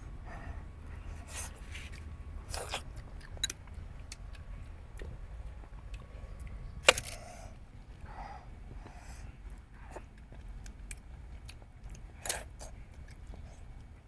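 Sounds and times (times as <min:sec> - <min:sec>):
low steady rumble: 0:00.0 - 0:14.0
chewing meat: 0:00.1 - 0:14.0
clicks and crunches: 0:01.3 - 0:05.1, 0:05.7 - 0:07.2.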